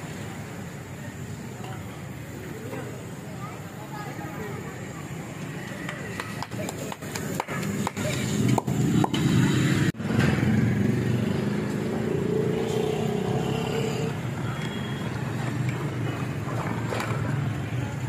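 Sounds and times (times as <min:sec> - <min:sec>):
motor traffic: 0:00.0 - 0:18.0
indistinct voices: 0:10.8 - 0:18.0.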